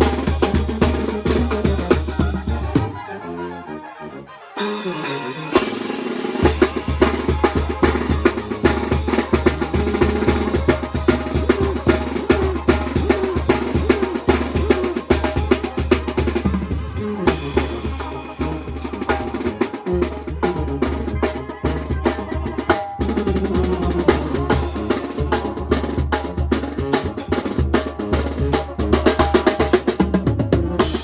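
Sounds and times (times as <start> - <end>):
fast bass drum beat: 0.0 - 2.9, 5.6 - 31.0
band music: 0.0 - 31.0
snare and cymbal strikes: 4.6 - 20.1.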